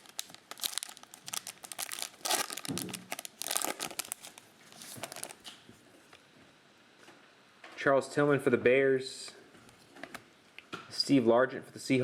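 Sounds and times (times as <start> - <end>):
wrappers crinkling: 0.0 - 5.6.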